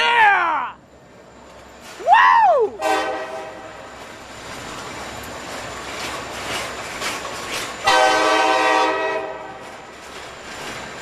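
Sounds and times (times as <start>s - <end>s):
locomotive air horn blast: 2.8s - 3.9s, 7.8s - 9.7s
freight train wheels clattering: 2.8s - 11.0s.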